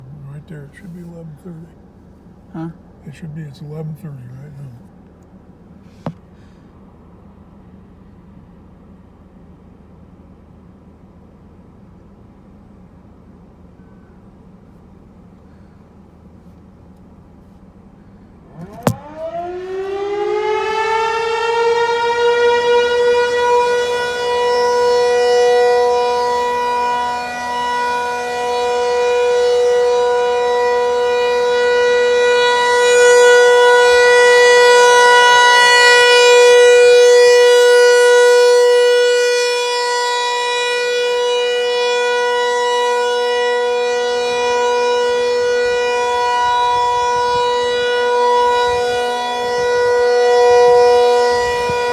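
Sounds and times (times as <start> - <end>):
outdoor warning siren: 18.0 - 51.9.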